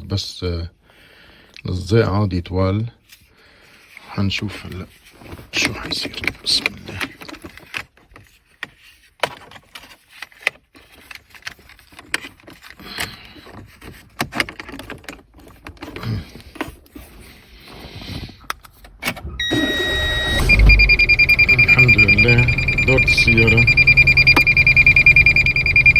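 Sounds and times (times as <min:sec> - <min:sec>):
electronic beep tone: 0:19.4 - 0:25.9
low engine rumble: 0:19.5 - 0:25.9.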